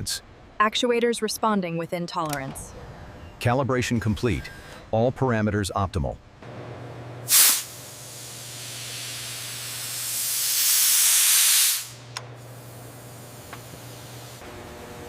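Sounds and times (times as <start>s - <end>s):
gas hissing: 7.3s - 14.4s.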